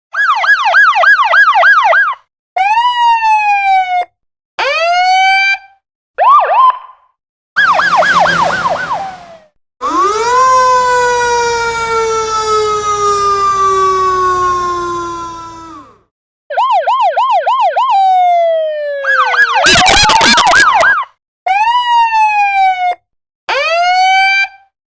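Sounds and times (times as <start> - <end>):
siren wail: 0.1 - 5.6, 7.6 - 24.4
siren yelp: 0.1 - 5.6, 6.2 - 7.0, 7.6 - 24.6
rushing noise: 7.6 - 9.5.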